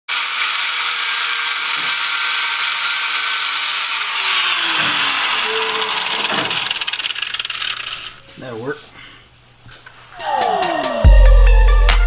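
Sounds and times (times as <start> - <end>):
power tool whining: 0.1 - 8.2.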